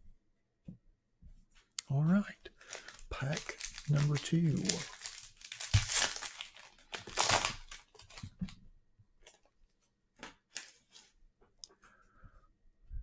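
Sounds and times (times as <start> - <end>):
wrapper tearing: 2.6 - 8.3, 10.5 - 10.9
wrapper crinkling: 2.6 - 8.4, 10.5 - 11.1.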